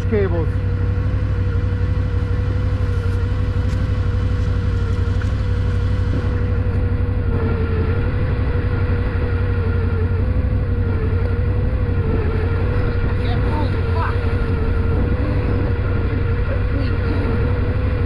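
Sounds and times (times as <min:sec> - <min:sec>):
atv engine running: 0:00.0 - 0:18.0.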